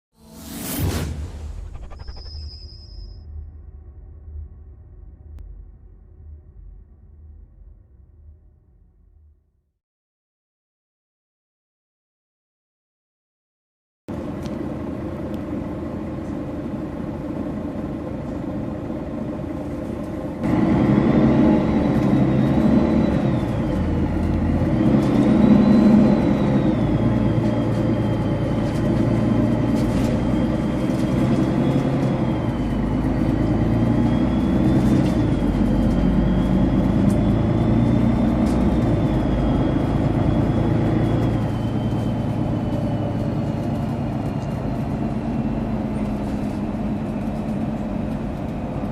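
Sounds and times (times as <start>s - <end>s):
turbocharger whistle: 0.2s - 3.7s, 20.9s - 28.5s, 30.0s - 45.7s
bus diesel engine: 14.1s - 48.9s.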